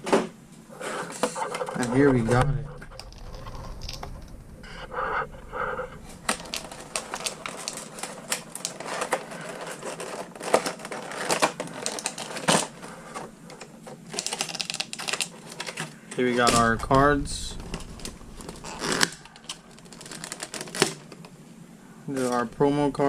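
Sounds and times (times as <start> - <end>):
packaging clicks and crinkles: 6.0 - 16.4, 17.6 - 21.3.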